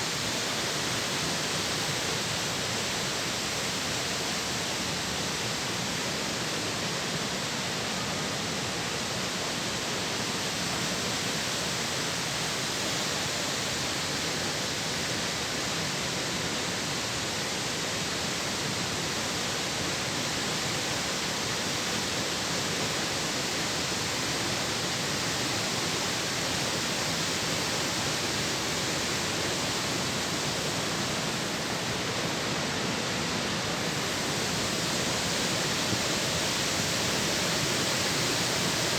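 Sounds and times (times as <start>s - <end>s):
water rushing down spillway: 10.5s - 38.9s.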